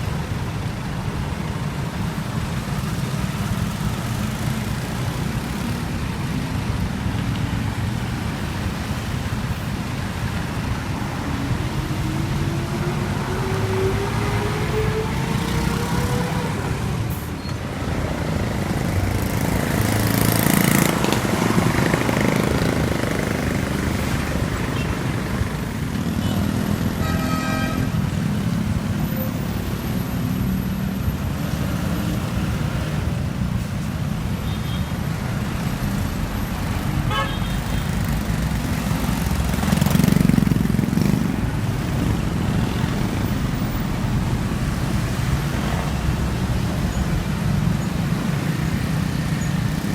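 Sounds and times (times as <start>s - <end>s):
heavy vehicle engines running: 0.0s - 49.9s
vehicle horn toots: 27.0s - 28.0s, 37.1s - 37.6s.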